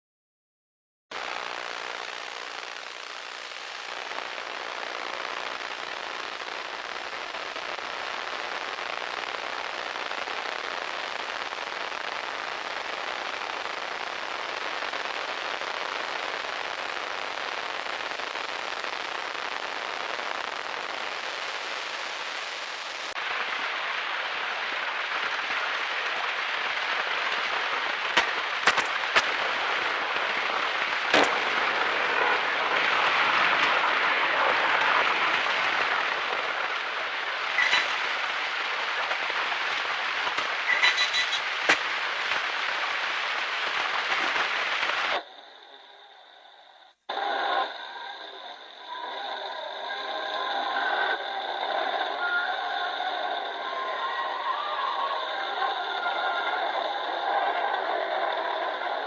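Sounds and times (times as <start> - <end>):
radio static crackling hiss: 1.1 - 59.0
sharp pops and crackles: 1.2 - 45.3.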